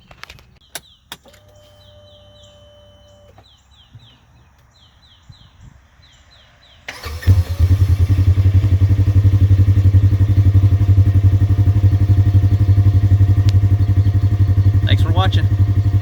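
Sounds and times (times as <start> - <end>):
engine starting and idling: 0.7 - 3.6, 6.9 - 16.0.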